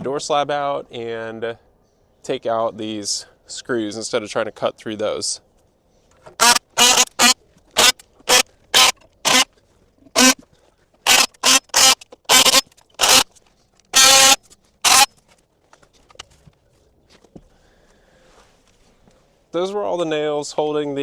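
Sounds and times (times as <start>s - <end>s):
multi-tool cutting nails: 6.4s - 9.5s, 10.1s - 10.4s, 11.0s - 13.3s, 13.9s - 15.1s.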